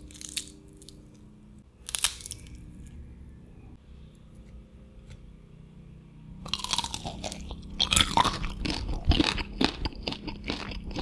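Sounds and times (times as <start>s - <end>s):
crunchy food being chewed: 0.0s - 1.2s, 1.9s - 3.0s, 6.5s - 11.0s.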